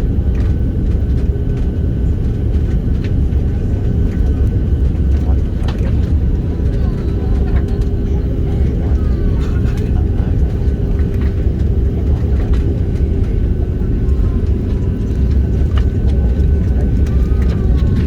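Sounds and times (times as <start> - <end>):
airliner cabin rumble: 0.0 - 18.0
engine and airflow hum: 0.0 - 18.0.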